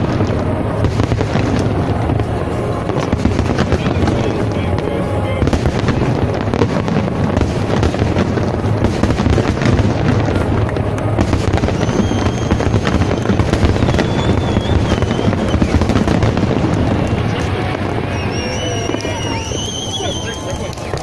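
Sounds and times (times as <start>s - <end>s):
fireworks crackling and popping: 0.0s - 21.0s.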